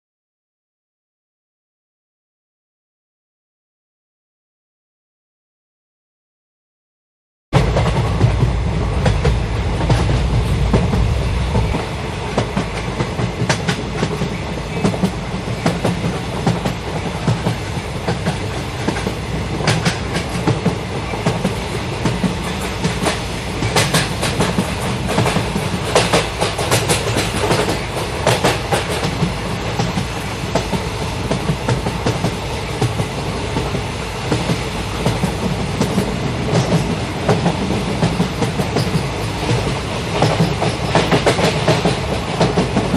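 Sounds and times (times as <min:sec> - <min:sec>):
train rumbling on rails: 0:07.5 - 0:42.9
wheels clicking over rail joints: 0:12.4 - 0:42.9.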